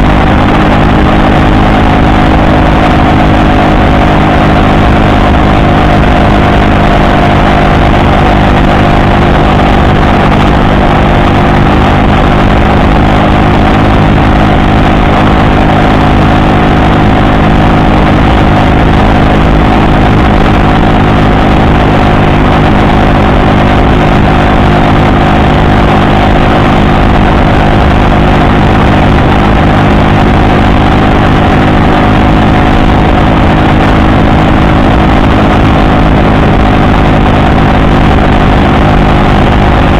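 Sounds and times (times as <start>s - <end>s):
moped engine running steady: 0.0s - 39.9s.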